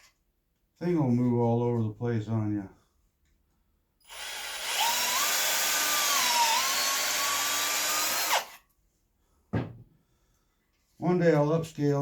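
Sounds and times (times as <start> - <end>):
power drill whining: 4.0 - 8.6
short knock: 9.5 - 9.9.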